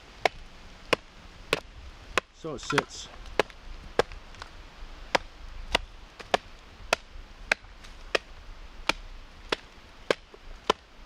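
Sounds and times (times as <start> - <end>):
axe chopping log: 0.2 - 4.5, 5.1 - 11.0.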